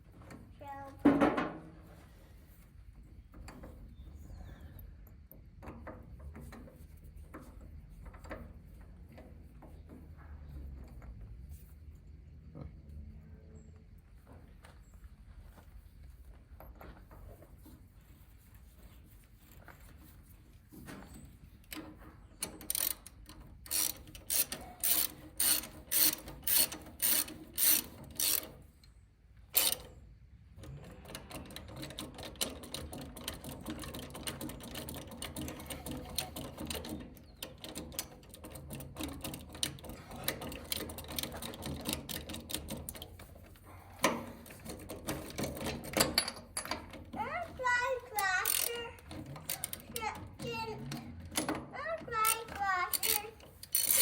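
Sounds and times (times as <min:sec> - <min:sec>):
socket ratchet clicking: 0:22.5 - 0:28.6, 0:29.6 - 0:29.8, 0:48.4 - 0:50.2, 0:52.2 - 0:54.0.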